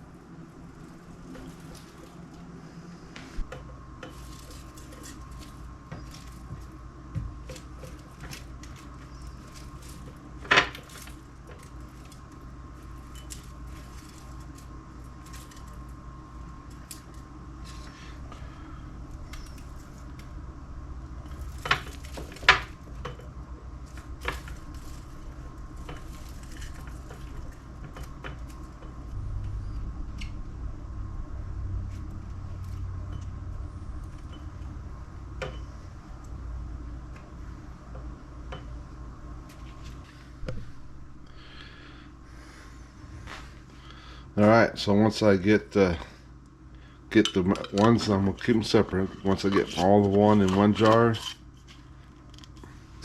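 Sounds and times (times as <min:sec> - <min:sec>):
dried leaves crackling: 0:00.0 - 0:46.1, 0:47.0 - 0:53.0
steady low hum: 0:00.0 - 0:53.0
leaves ticking in glass jar: 0:07.4 - 0:16.0.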